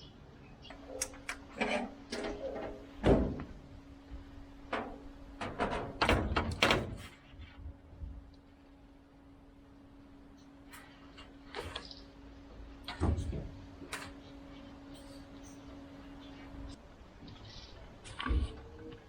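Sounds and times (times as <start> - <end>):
faint steady hum: 0.0 - 19.0
knocks and clunks of solar panel: 0.7 - 8.2, 12.8 - 14.2.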